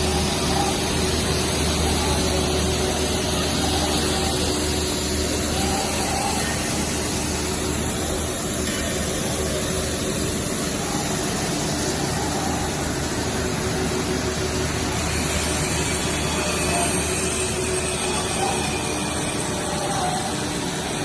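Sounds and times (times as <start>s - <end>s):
pellet mill mechanical hum: 0.0s - 21.0s.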